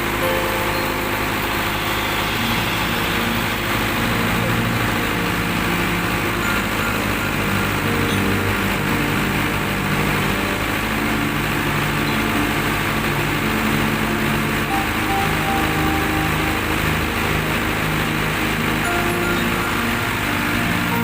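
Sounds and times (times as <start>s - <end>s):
diesel engine running steadily: 0.0s - 21.0s.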